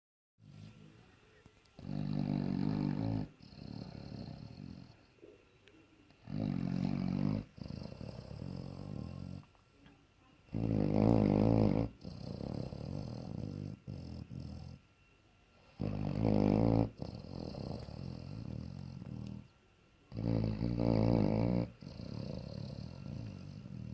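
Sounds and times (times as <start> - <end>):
dog snoring: 1.8 - 5.3, 6.2 - 9.5, 10.5 - 14.9, 15.6 - 19.5, 20.1 - 23.9.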